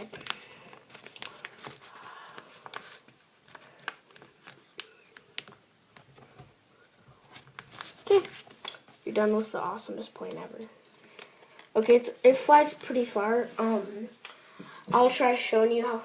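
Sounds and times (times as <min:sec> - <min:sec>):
paper being folded and creased: 0:00.0 - 0:06.4, 0:07.3 - 0:09.4.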